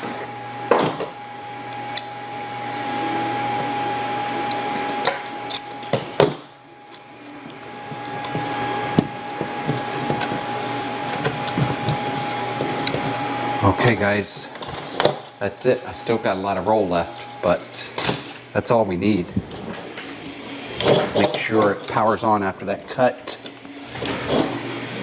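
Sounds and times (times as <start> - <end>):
small machine whining: 0.0 - 18.6.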